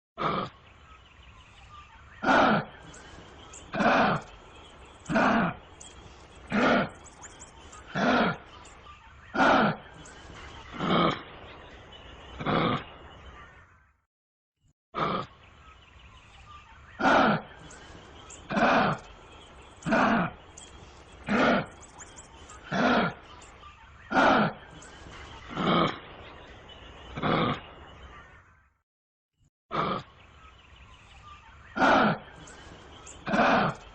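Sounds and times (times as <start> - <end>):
kangaroo grunting: 0.2 - 0.6, 2.2 - 8.6, 9.3 - 11.4, 12.4 - 13.0, 15.0 - 15.4, 17.0 - 23.3, 24.1 - 26.1, 27.2 - 27.8, 29.7 - 30.2, 31.8 - 33.9.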